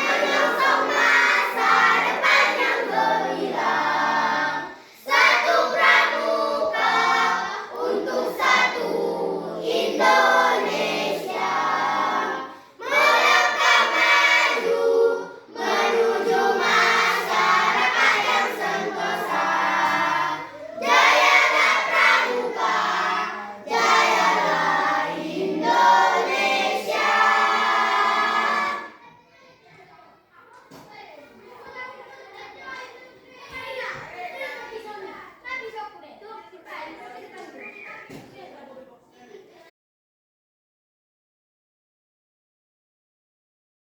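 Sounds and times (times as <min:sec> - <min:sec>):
choir singing: 0:00.0 - 0:29.0.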